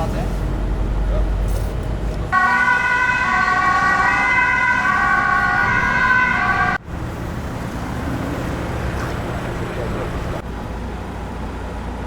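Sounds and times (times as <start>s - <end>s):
two-tone siren: 2.3s - 6.8s.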